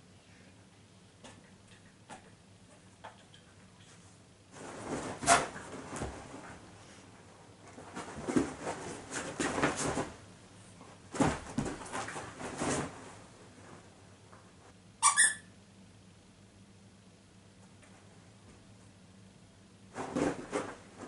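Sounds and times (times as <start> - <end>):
squeaker squeaking: 15.0 - 15.5.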